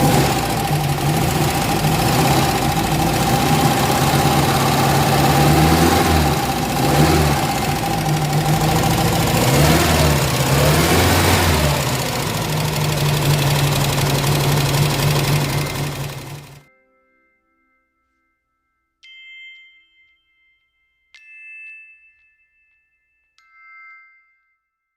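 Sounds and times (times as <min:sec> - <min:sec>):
car engine idling and revving: 0:00.0 - 0:16.6.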